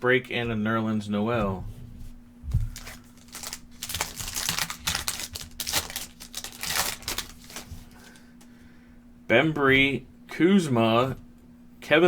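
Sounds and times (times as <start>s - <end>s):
faint steady hum: 0.0s - 12.0s
trading cards rustling and flicking: 2.6s - 8.3s.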